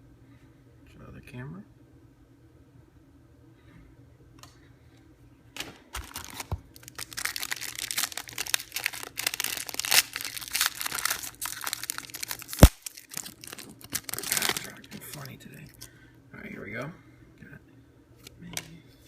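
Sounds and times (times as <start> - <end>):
wrapper crinkling and tearing: 5.9 - 15.9.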